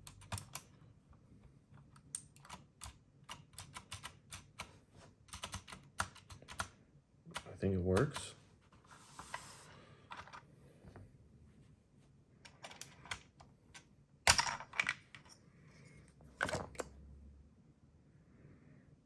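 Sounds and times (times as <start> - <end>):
mechanical keyboard clacking: 0.0 - 0.7, 2.1 - 4.7, 5.3 - 8.3.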